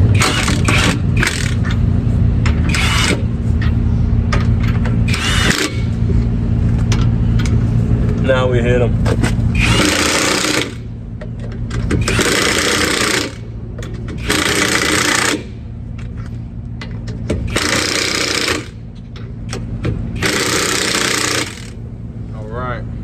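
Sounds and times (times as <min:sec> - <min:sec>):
impact wrench hammering: 0:00.0 - 0:01.8, 0:02.5 - 0:03.3, 0:05.1 - 0:06.0, 0:09.1 - 0:10.9, 0:11.7 - 0:15.6, 0:17.2 - 0:18.8, 0:19.5 - 0:21.8.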